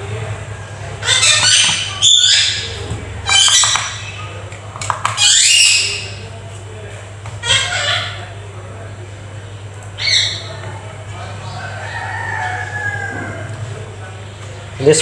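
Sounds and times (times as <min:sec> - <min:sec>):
bird squawking: 0:01.0 - 0:04.4, 0:07.4 - 0:08.4, 0:10.0 - 0:10.6.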